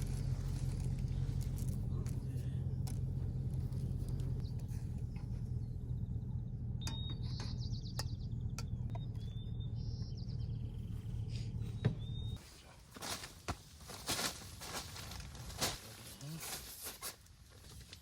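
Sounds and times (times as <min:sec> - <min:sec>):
steady low rumble: 0:00.0 - 0:12.4
small birds chirping: 0:00.0 - 0:13.3.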